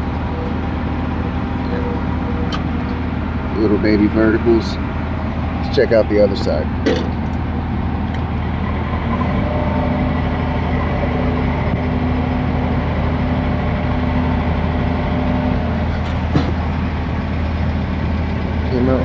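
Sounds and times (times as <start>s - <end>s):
higher steady tone: 0.0s - 6.5s
engine idling: 0.0s - 19.0s.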